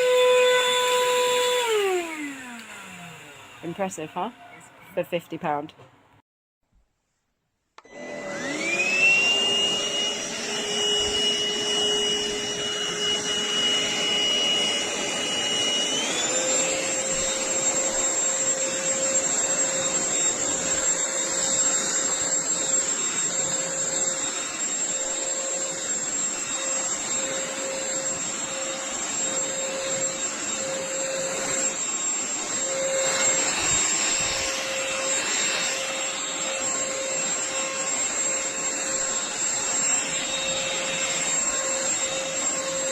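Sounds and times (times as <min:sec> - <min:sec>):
vacuum cleaner motor whining: 0:00.0 - 0:05.0, 0:07.8 - 0:42.9.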